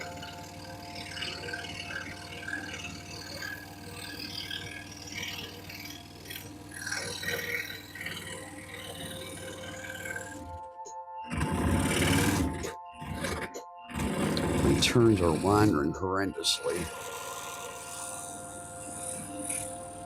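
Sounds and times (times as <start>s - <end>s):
scroll saw cutting wood: 0.0s - 10.7s, 11.3s - 20.0s.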